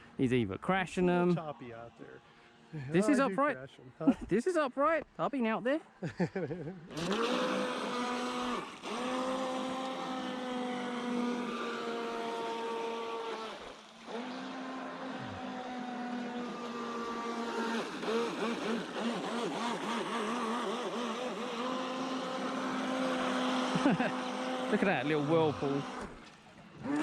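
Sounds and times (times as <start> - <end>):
electric boat motor whining: 6.8 - 27.0.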